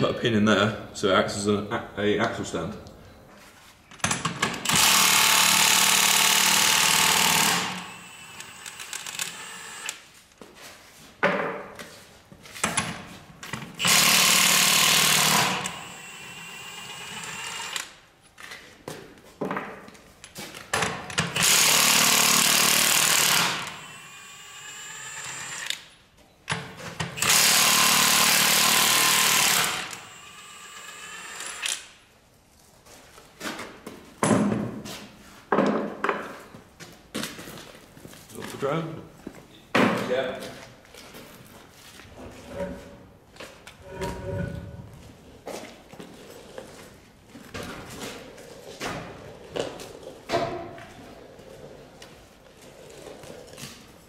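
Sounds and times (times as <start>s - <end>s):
impact wrench hammering: 4.0s - 9.6s, 13.8s - 16.4s.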